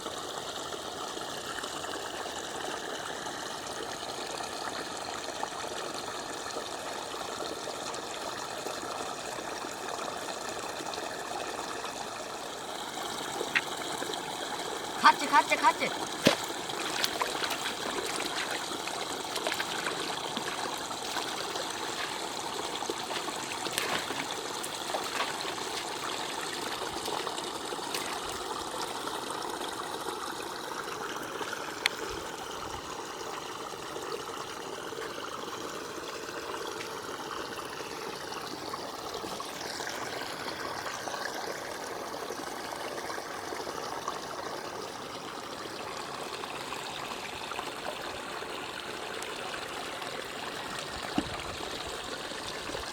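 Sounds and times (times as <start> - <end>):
water trickling: 0.0 - 52.9.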